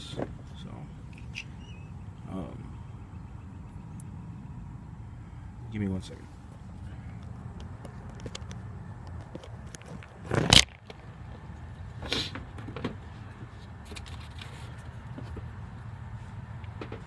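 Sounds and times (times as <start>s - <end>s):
steady low hum: 0.0s - 17.0s
scraping rustle: 12.0s - 15.4s.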